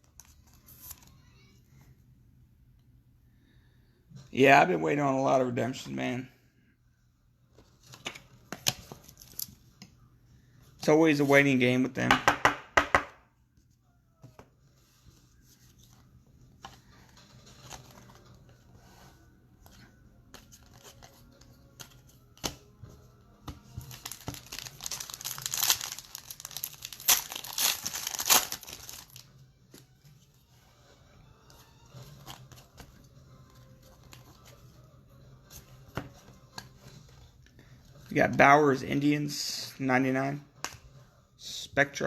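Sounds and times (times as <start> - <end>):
cards clicking and rustling: 15.7 - 19.0, 19.6 - 29.9
wrapper tearing and crinkling: 23.8 - 29.3.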